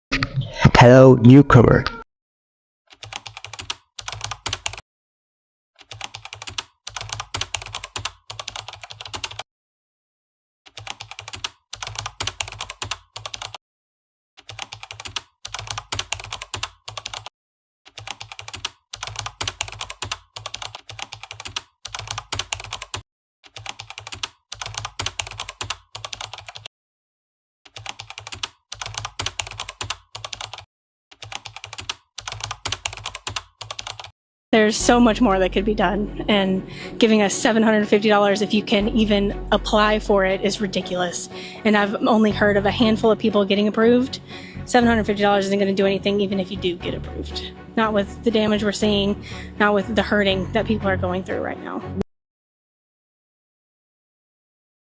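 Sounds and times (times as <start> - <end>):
keyboard typing: 0.1 - 2.0, 3.0 - 4.8, 5.8 - 9.4, 10.8 - 13.6, 14.4 - 17.3, 18.0 - 26.7, 27.7 - 34.1.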